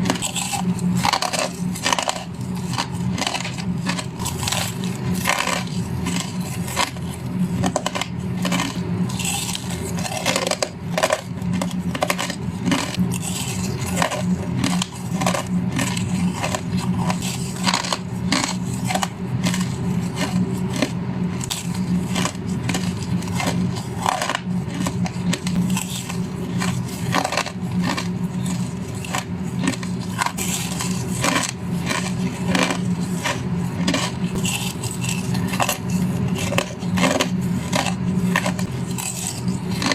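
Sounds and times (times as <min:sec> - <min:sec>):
person crunching ice: 0:00.0 - 0:39.9.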